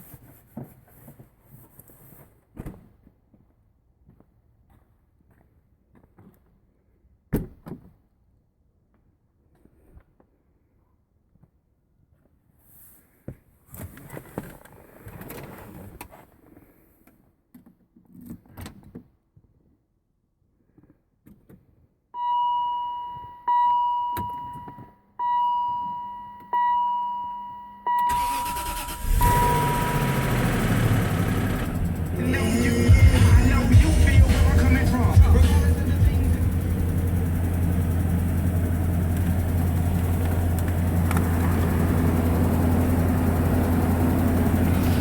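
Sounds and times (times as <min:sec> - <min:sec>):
dashboard warning chime: 0:22.2 - 0:45.0
car engine cranking and running: 0:28.1 - 0:45.0.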